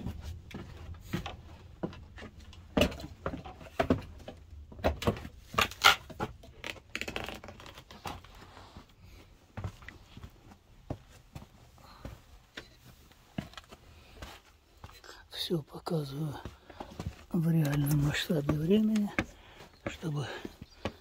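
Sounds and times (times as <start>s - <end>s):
footsteps: 16.2s - 21.0s.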